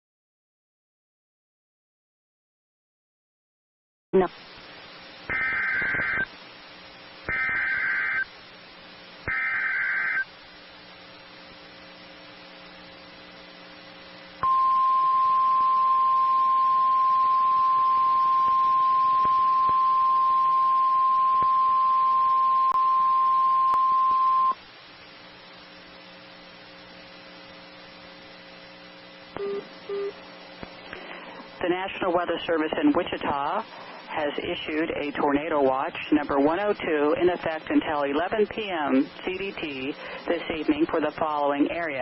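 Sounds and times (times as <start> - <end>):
faint low hum: 4.2 - 42.0
warbling data noise bursts: 5.0 - 10.4.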